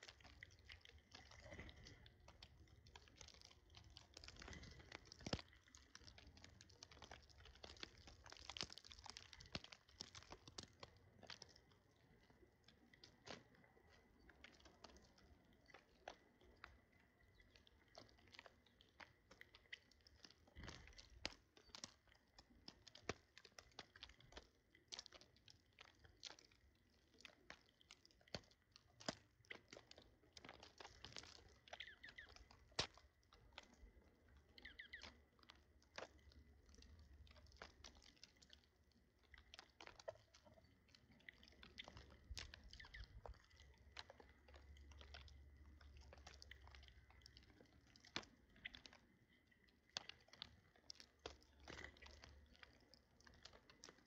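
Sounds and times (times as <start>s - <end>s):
birds cracking seeds: 0.2s - 11.8s, 29.0s - 38.7s, 41.5s - 48.9s.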